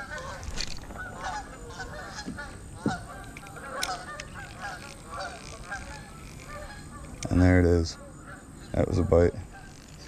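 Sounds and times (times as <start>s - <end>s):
birds honking: 0.0s - 10.0s
soft knocks: 2.2s - 3.1s.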